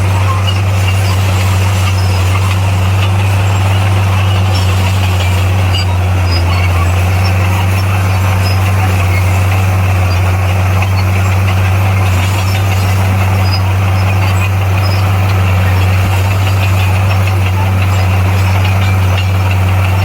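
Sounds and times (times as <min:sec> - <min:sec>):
bulldozer diesel engine droning: 0:00.0 - 0:20.0.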